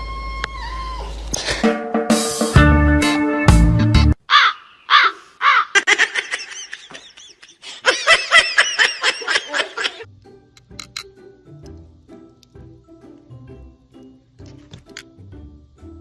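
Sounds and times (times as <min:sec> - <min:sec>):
music: 0:00.0 - 0:04.2, 0:10.0 - 0:16.0
animal cries: 0:04.3 - 0:05.9.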